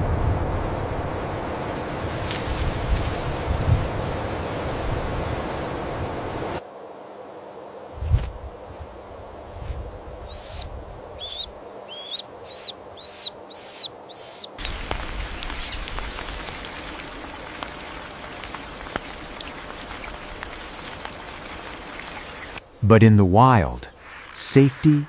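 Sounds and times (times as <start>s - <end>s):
steady hiss: 0.0s - 22.8s
bird chirping: 10.2s - 16.3s.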